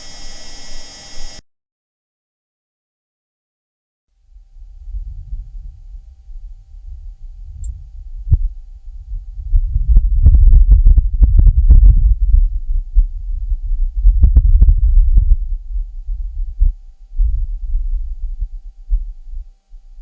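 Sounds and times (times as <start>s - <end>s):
wind buffeting microphone: 4.4s - 20.0s.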